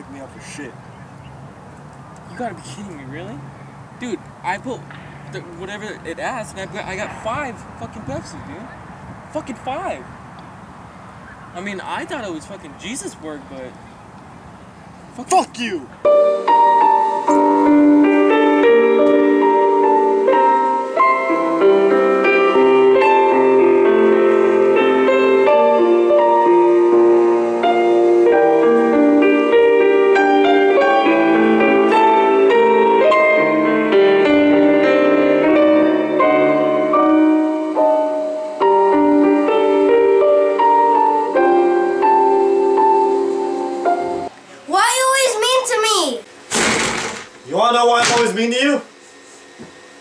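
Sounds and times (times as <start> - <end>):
piano music: 15.6 - 44.3.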